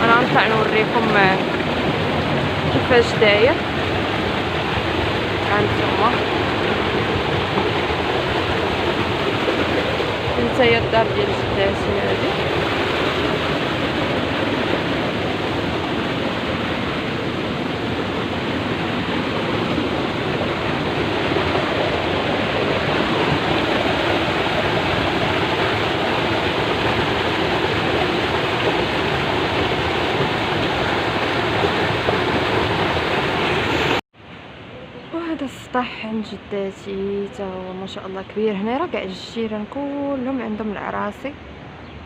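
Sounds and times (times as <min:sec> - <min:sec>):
water rushing along a channel: 0:00.0 - 0:41.8.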